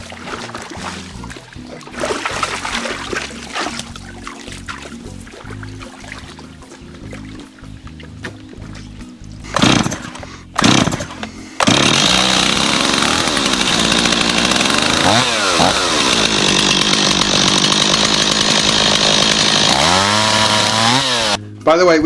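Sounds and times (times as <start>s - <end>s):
chainsaw engine running and revving: 9.5s - 21.4s
chainsaw starter cord pulls: 9.5s - 21.4s.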